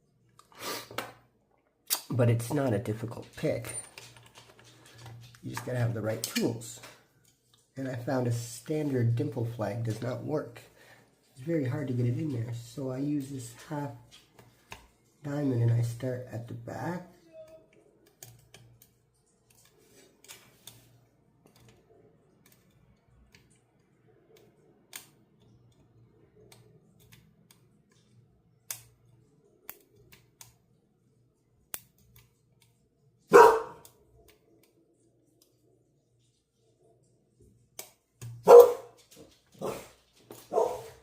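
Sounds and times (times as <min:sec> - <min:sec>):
dog barking: 0:33.3 - 0:33.8, 0:38.4 - 0:39.0, 0:39.6 - 0:39.9, 0:40.5 - 0:41.0.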